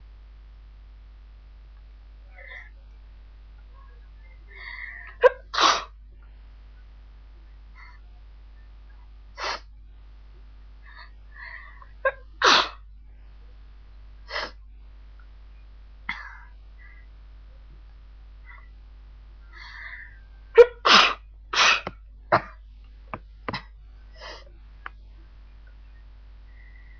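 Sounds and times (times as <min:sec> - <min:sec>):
soft breaths: 0:03.6 - 0:05.2, 0:10.8 - 0:12.0, 0:19.4 - 0:20.5, 0:24.0 - 0:26.9
person sneezing: 0:05.2 - 0:05.9, 0:20.6 - 0:21.9.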